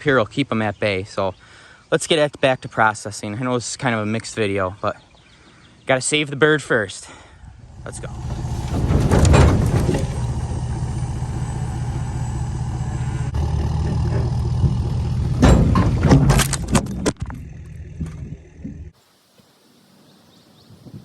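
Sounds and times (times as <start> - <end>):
engine drone: 7.5 - 19.0
loud clatter and rushing noise: 7.6 - 12.2.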